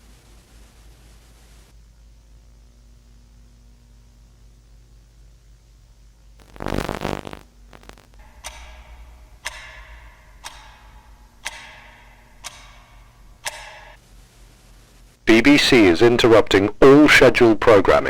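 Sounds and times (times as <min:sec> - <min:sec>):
harsh buzzing burst: 0:06.4 - 0:13.6
clock ticking: 0:08.2 - 0:14.0.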